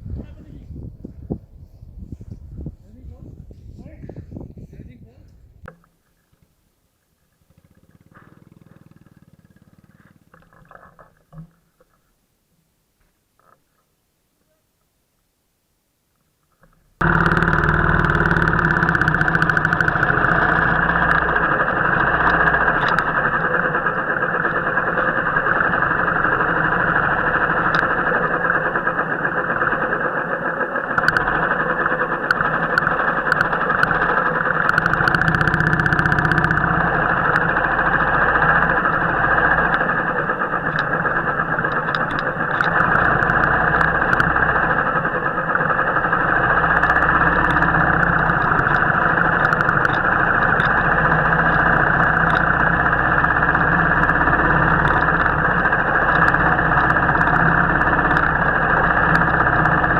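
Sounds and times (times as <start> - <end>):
motorcycle engine running: 7.2 - 11.6, 17.0 - 59.9
sharp clicks: 16.5 - 59.9.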